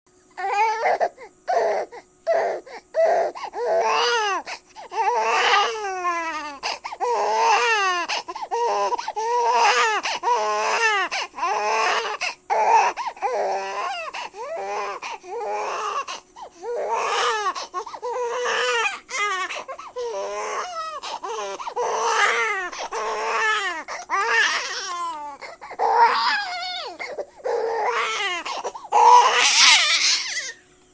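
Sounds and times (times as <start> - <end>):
infant crying: 0.4 - 30.6
gasping breaths: 6.6 - 7.0, 19.4 - 21.8.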